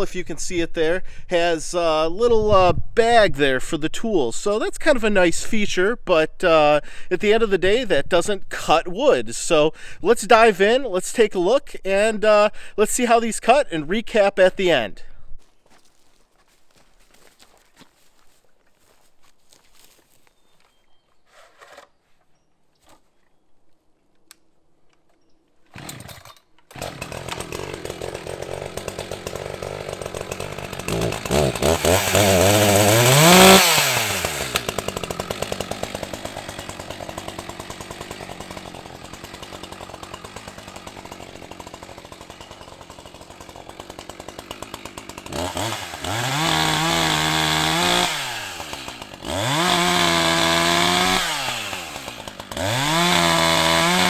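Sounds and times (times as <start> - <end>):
chainsaw engine idling and revving: 25.7 - 54.0.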